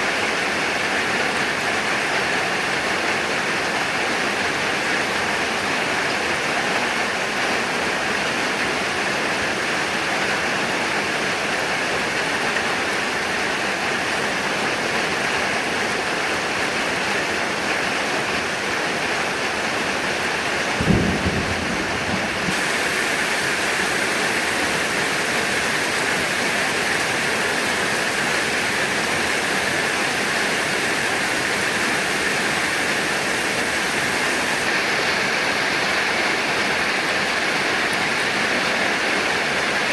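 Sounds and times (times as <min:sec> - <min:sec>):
heavy rain hissing: 0:00.0 - 0:39.9
short low boom: 0:20.8 - 0:22.6.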